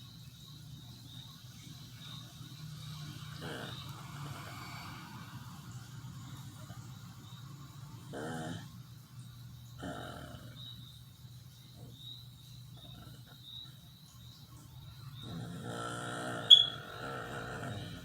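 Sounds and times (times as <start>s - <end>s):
sleeping person moaning: 15.2s - 18.0s.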